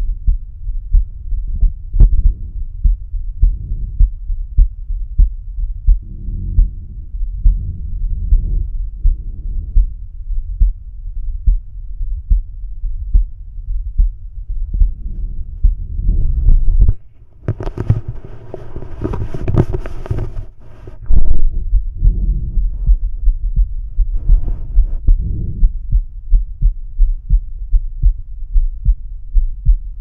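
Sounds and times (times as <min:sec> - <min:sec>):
heartbeat through stethoscope: 0:00.0 - 0:30.0
stethoscope rubbing on skin: 0:16.4 - 0:21.1, 0:24.2 - 0:25.1.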